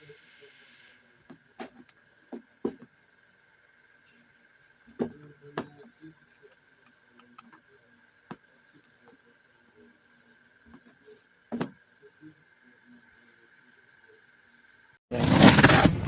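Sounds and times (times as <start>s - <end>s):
faint high-pitched hum: 0.0s - 15.0s.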